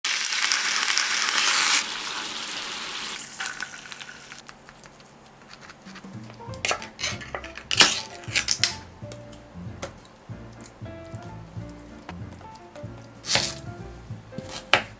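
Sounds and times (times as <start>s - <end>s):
food sizzling in a frying pan: 0.0s - 4.4s
background music: 5.8s - 14.9s.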